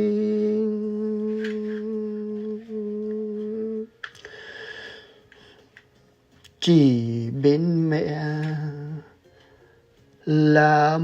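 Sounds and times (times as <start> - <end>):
person singing long note: 0.0 - 3.9
soft breath: 4.2 - 5.8.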